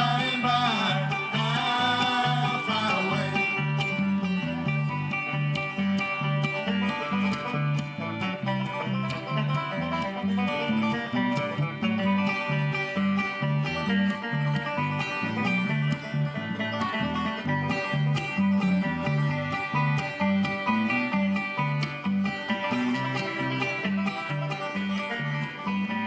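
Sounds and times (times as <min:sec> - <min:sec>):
acoustic guitar: 0:00.0 - 0:26.0
banjo: 0:00.0 - 0:26.0
bass notes: 0:00.0 - 0:26.0.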